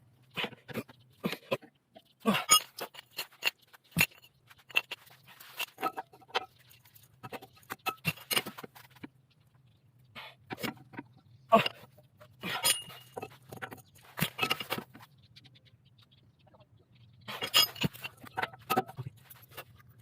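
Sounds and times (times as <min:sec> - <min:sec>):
metal tools clinking: 0:02.3 - 0:08.9, 0:12.4 - 0:15.0, 0:17.3 - 0:19.8.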